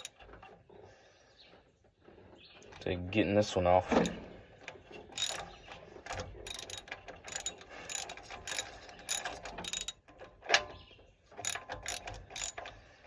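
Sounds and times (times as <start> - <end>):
socket ratchet clicking: 5.2 - 5.4, 6.4 - 10.0, 11.4 - 12.6.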